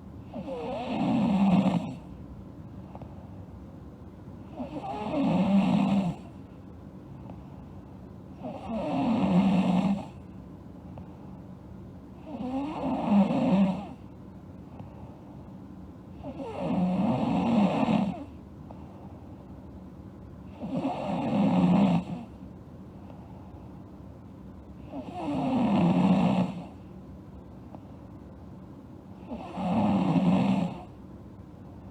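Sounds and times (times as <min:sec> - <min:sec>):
girl snoring: 0:00.3 - 0:02.0, 0:04.5 - 0:06.3, 0:08.4 - 0:10.2, 0:12.2 - 0:14.0, 0:16.2 - 0:18.3, 0:20.6 - 0:22.3, 0:24.9 - 0:26.8, 0:29.2 - 0:30.9.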